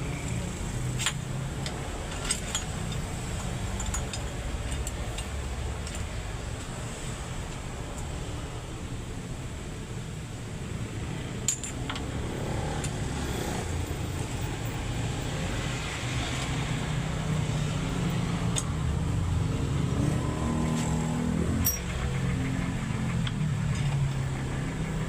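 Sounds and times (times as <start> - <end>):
engine running steadily: 17.8 - 25.0.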